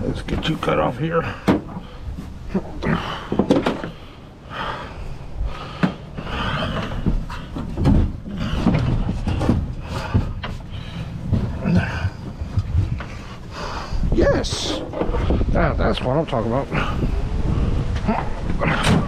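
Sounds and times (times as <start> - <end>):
low wind rumble on microphone: 3.9 - 19.0
scrap metal knocking and clattering: 5.7 - 13.5, 14.4 - 15.5.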